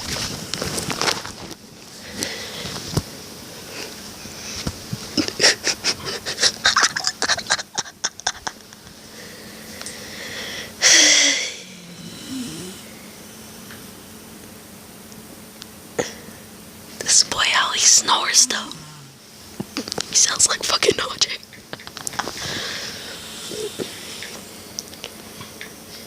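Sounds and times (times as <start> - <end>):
man snoring: 10.0 - 13.5, 17.1 - 19.3, 22.4 - 24.7.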